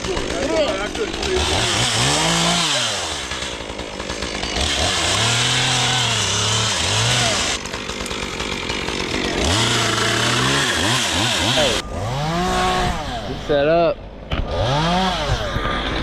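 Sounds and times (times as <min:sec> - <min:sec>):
engine revving: 0:01.2 - 0:07.6, 0:09.0 - 0:13.6, 0:14.3 - 0:16.0.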